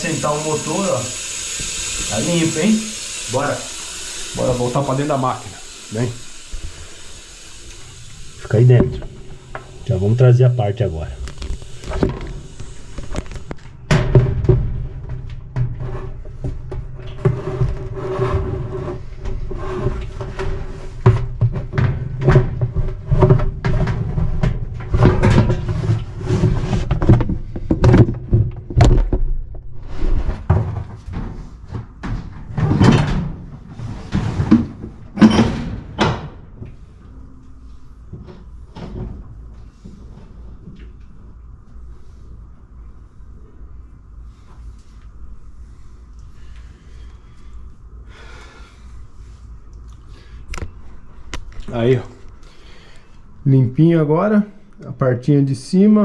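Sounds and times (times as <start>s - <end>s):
steady low hum: 0.0s - 56.0s
machine parts knocking and rattling: 20.0s - 29.7s.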